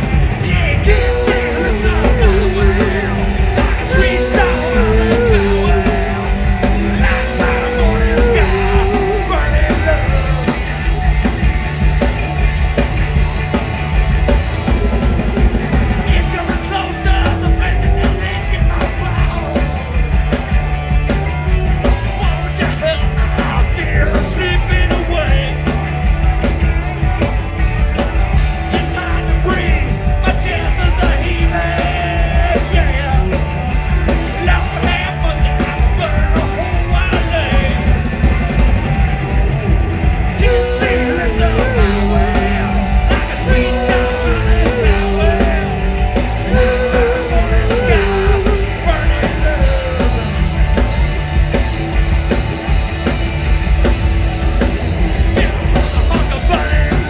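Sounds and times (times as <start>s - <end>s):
drums and cymbals: 0.0s - 57.0s
rock band playing: 0.0s - 57.0s
person singing: 0.5s - 10.6s, 40.4s - 50.8s.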